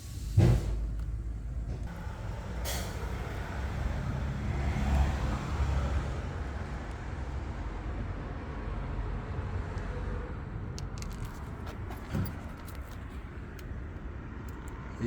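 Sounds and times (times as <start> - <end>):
car engine idling: 10.3 - 15.0.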